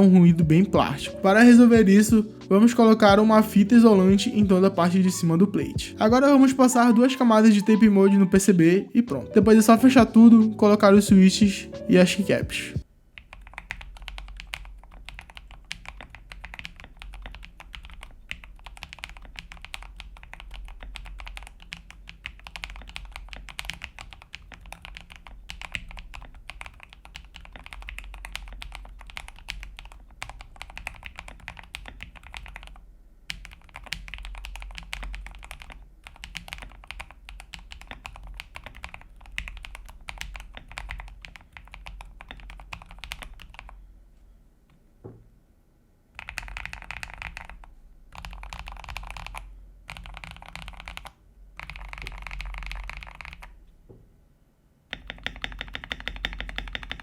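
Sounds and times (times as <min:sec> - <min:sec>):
typing on mechanical keyboard: 0:13.2 - 0:43.8, 0:46.2 - 0:53.6, 0:54.9 - 0:57.0.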